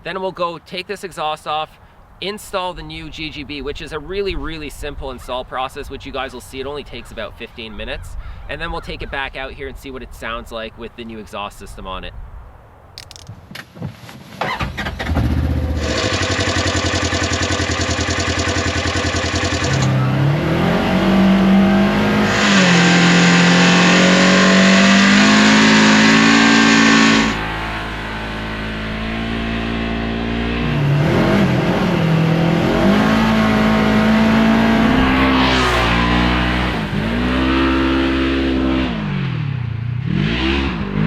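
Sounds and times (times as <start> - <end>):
off-road vehicle engine revving: 15.0 - 41.0.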